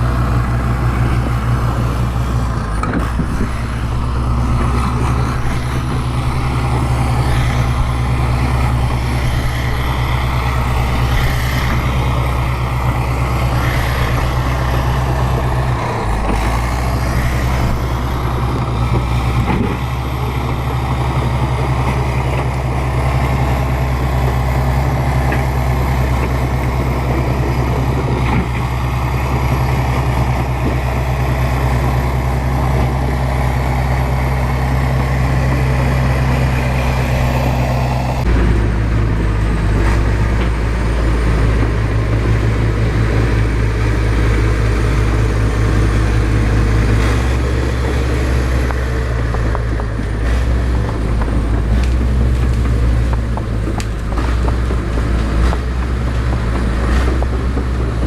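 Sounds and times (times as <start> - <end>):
bulldozer diesel engine droning: 0.0 - 58.0.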